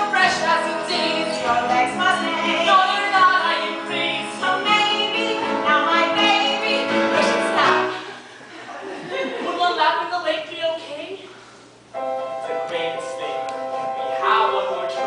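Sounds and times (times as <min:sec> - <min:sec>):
voices singing show tune: 0:00.0 - 0:08.0.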